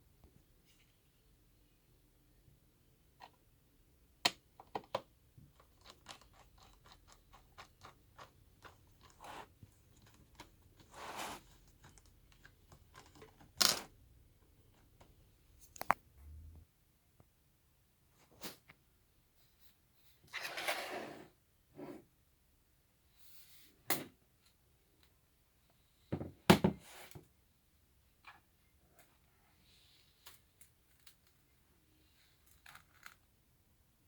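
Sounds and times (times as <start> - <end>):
small clicks and taps: 15.7 - 16.0.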